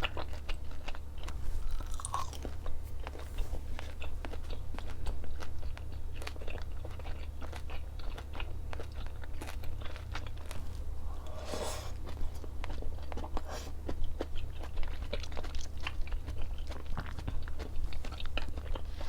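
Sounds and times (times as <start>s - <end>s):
constant low hum: 0.0s - 19.0s
person chewing crunchy food: 0.0s - 19.0s.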